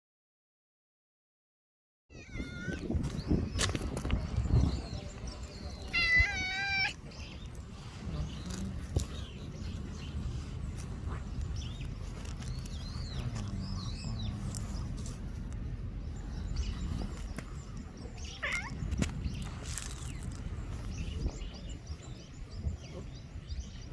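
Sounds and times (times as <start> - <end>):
kitten meowing: 2.1 - 2.9, 5.9 - 7.0, 18.4 - 18.8.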